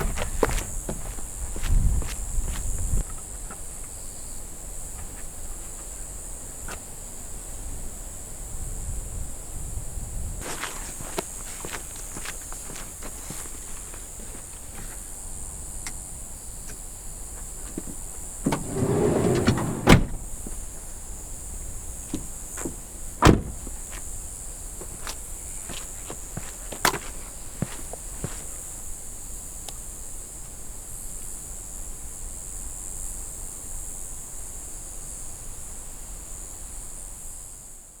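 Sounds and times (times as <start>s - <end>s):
wind buffeting microphone: 0.0s - 3.0s
door shutting with a bang: 18.4s - 20.4s, 23.2s - 23.8s
door sliding: 18.4s - 20.4s, 23.2s - 23.6s.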